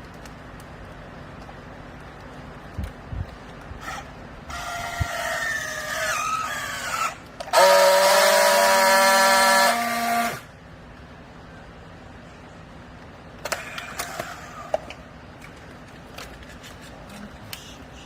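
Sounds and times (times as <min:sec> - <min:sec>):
baling machine whine: 0:03.8 - 0:10.6.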